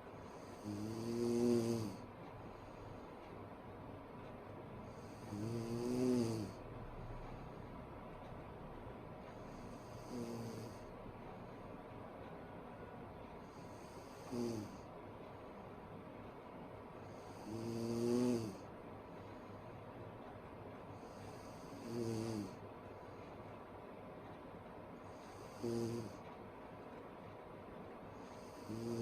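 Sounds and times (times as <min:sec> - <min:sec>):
woman snoring: 0:00.3 - 0:02.0, 0:04.8 - 0:06.6, 0:09.5 - 0:10.9, 0:13.4 - 0:14.8, 0:17.0 - 0:18.7, 0:21.0 - 0:22.6, 0:25.0 - 0:26.3, 0:28.2 - 0:29.0.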